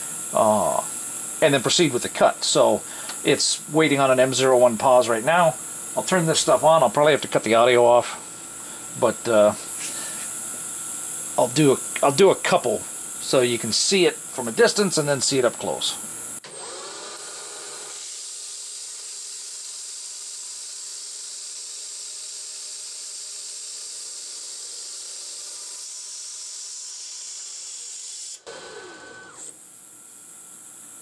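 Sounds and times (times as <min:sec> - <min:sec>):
lathe spindle running: 0:00.0 - 0:18.9.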